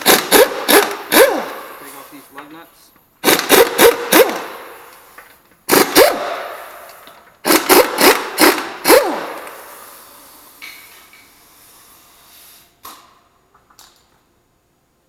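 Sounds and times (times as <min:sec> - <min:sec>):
impact wrench bursts: 0:00.0 - 0:02.1, 0:03.2 - 0:13.1.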